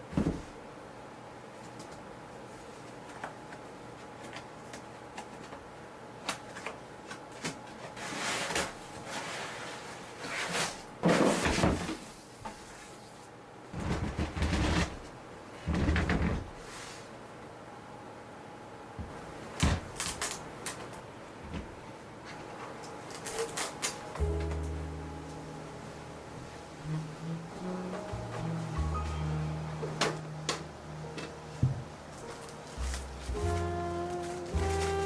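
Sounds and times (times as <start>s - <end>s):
scraping or rustling: 7.8s - 12.0s, 32.2s - 35.0s.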